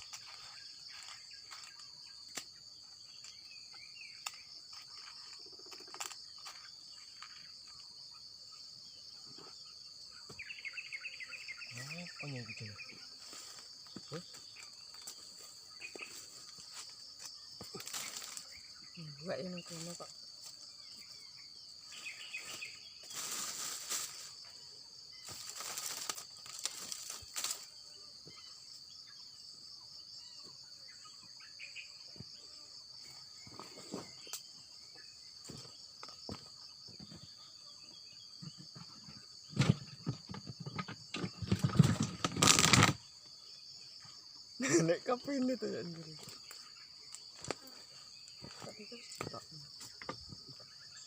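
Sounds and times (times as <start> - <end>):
insects chirping: 0.0 - 51.0
rustling noise: 22.2 - 24.4.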